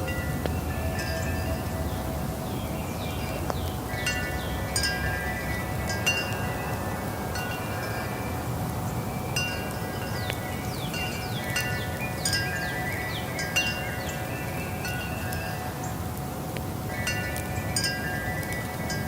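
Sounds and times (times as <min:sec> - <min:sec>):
wind chimes ringing: 0:00.0 - 0:15.9, 0:16.9 - 0:19.0.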